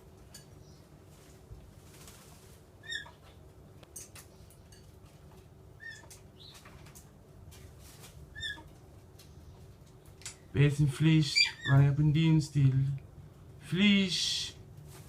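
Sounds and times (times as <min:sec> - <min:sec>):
parrots chirping: 0:02.8 - 0:03.4, 0:05.8 - 0:06.7, 0:08.3 - 0:08.7, 0:11.3 - 0:11.8.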